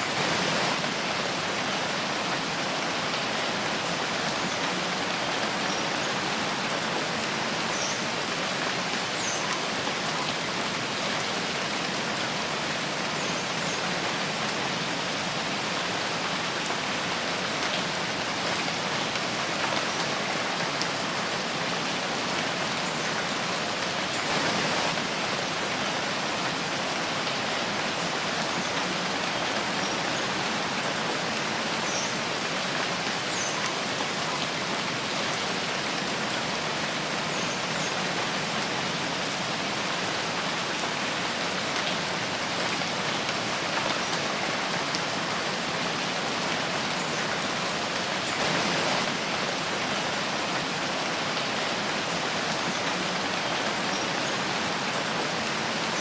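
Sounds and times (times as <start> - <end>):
rain falling in forest: 0.0 - 56.0.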